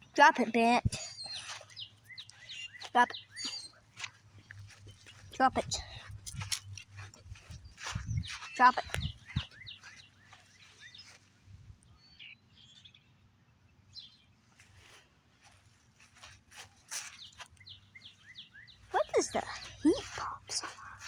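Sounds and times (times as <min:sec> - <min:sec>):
faint bird chirps: 0:00.8 - 0:03.8.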